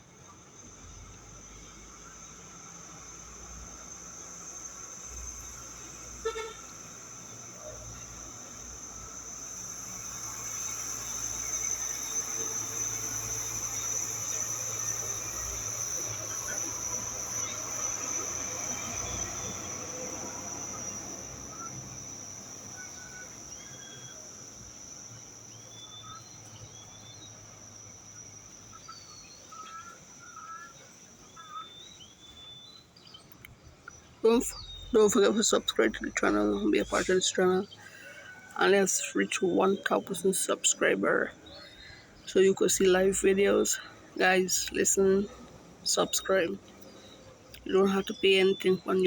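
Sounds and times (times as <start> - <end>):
insects trilling: 0.0 - 49.0.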